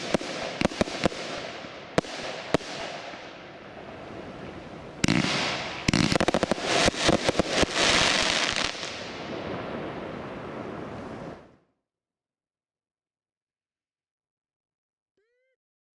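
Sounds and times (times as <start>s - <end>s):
fireworks hiss: 0.0s - 11.4s
fireworks bangs: 0.0s - 11.5s.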